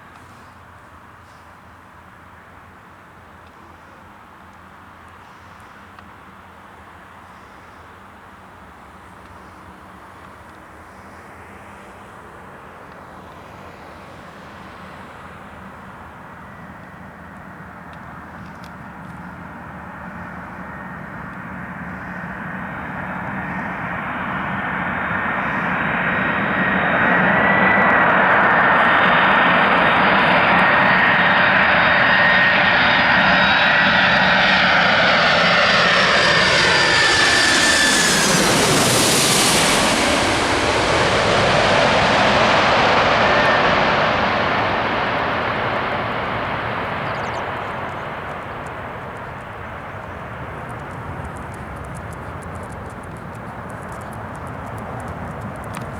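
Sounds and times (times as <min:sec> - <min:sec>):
jet engines roaring: 0:11.1 - 0:55.9.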